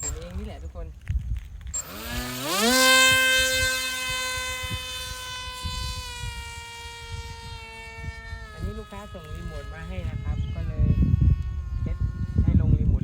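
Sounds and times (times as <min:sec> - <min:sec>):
electric motor whining: 0:00.0 - 0:13.0.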